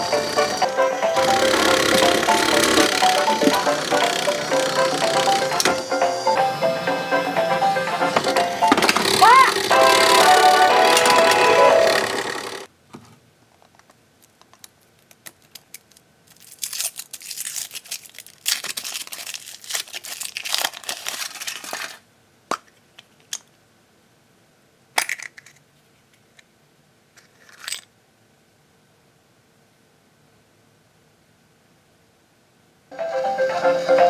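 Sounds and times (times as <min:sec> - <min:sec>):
background music: 0:00.0 - 0:12.7, 0:32.9 - 0:34.0
foil wrapper crinkling and tearing: 0:14.2 - 0:22.0.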